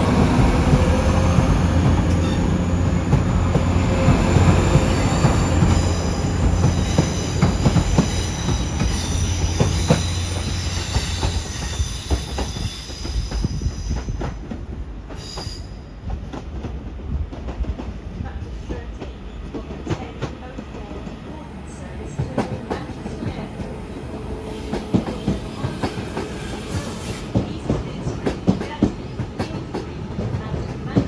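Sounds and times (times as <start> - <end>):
train running hum: 0.0 - 31.0
train wheels squealing: 0.6 - 14.4, 15.1 - 16.1, 22.6 - 28.8.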